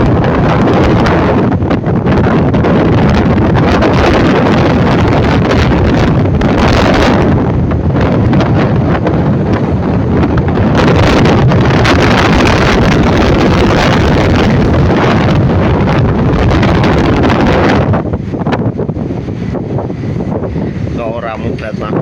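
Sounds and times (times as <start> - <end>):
strong wind on microphone: 0.0 - 22.0.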